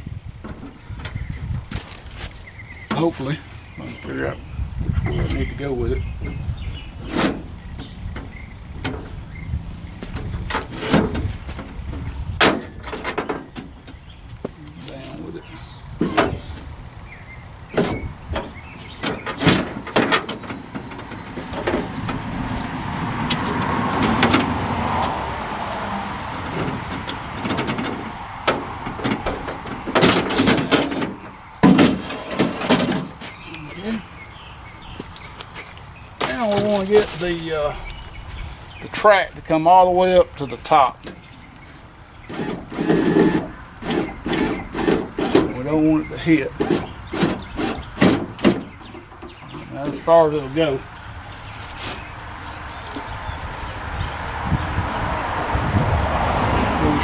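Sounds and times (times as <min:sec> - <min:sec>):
window glass scraping in door: 0:00.0 - 0:35.0, 0:36.1 - 0:37.8, 0:38.7 - 0:52.8
metal clunks: 0:00.0 - 0:38.0, 0:38.8 - 0:51.0
loud scrape: 0:07.0 - 0:09.2, 0:10.0 - 0:13.6, 0:26.3 - 0:33.4, 0:41.1 - 0:50.1, 0:51.6 - 0:52.2
clicks and knocks: 0:10.0 - 0:14.6, 0:17.7 - 0:25.2, 0:26.4 - 0:33.4.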